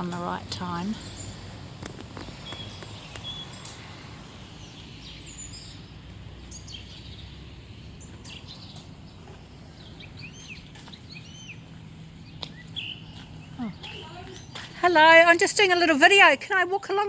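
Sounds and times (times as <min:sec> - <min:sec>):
small birds chirping: 0:00.0 - 0:16.6
road traffic rumble: 0:00.0 - 0:17.0.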